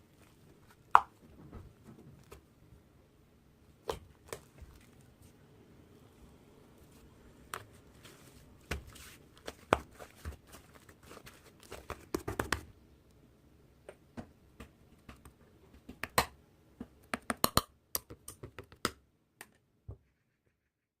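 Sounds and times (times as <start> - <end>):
faint room noise: 0.0 - 20.8
sharp clicks and taps: 17.0 - 19.6.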